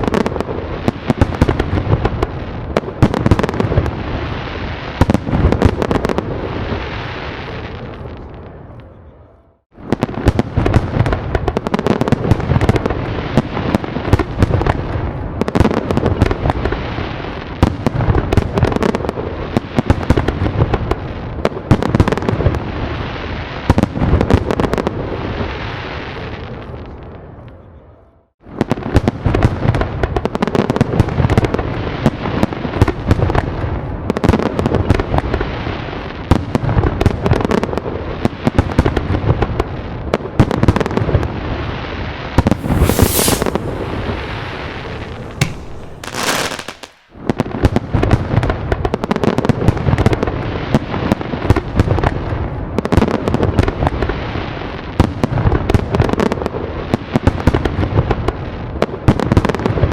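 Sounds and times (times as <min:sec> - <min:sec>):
fireworks bangs and crackling: 0:00.0 - 0:08.8, 0:09.8 - 0:27.3, 0:28.4 - 0:59.9
deep firework booms: 0:42.4 - 0:48.6
hissing rushes: 0:42.5 - 0:47.1.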